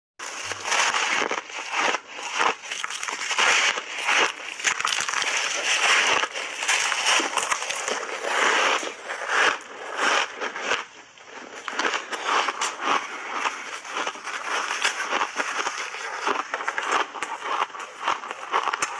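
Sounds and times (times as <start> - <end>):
crunchy ice chewing: 0.2 - 18.9.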